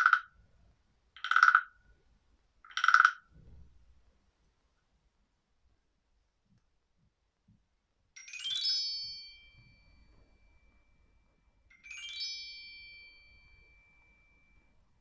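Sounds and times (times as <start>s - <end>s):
chime percussion sweep ringing: 8.2s - 15.0s.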